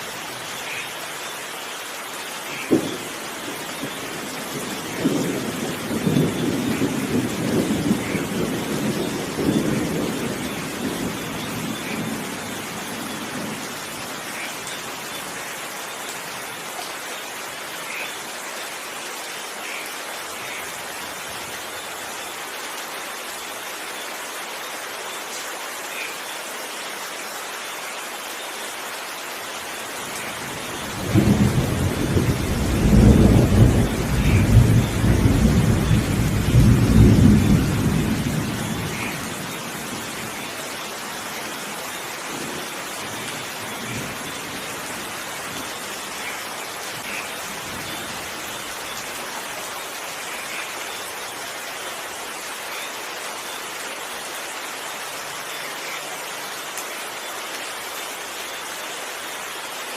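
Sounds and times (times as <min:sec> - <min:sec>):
rain falling: 0:00.0 - 0:59.9
thunder rumbling: 0:02.7 - 0:13.6, 0:30.5 - 0:40.5.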